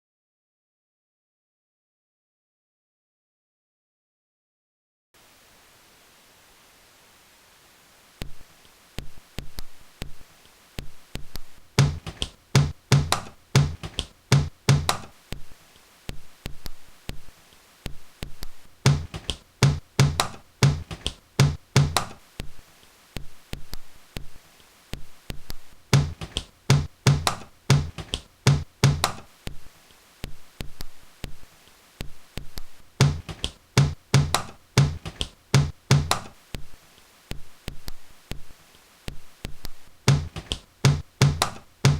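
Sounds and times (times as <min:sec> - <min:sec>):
percussive beat of knocks and clicks: 0:09.0 - 0:10.2, 0:10.8 - 0:17.3, 0:17.9 - 0:22.6, 0:23.2 - 0:41.9.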